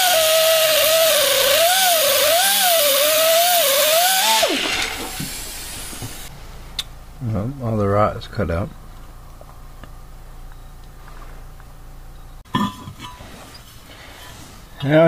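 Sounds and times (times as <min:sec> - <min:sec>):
grinder cutting steel: 0:00.0 - 0:06.3.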